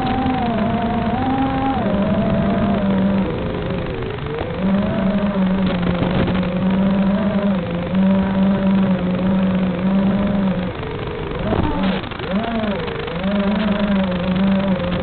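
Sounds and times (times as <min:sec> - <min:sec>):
low drone: 0:00.0 - 0:15.0
model aircraft motor humming: 0:00.0 - 0:15.0.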